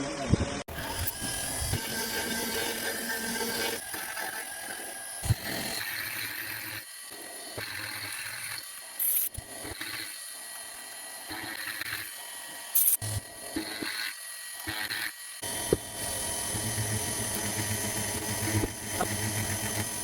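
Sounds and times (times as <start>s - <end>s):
milling machine clatter: 12.8s - 20.0s.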